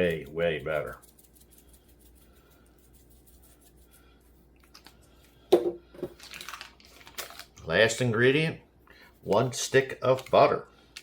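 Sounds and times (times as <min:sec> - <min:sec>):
kitchen items handled: 0:04.6 - 0:07.5.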